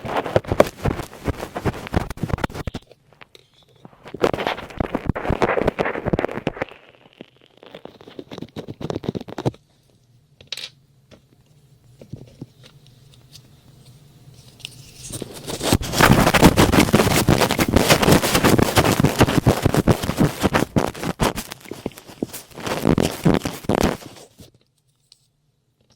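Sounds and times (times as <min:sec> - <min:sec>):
scratching on microphone: 0:00.0 - 0:02.9, 0:03.8 - 0:09.6, 0:14.7 - 0:24.5.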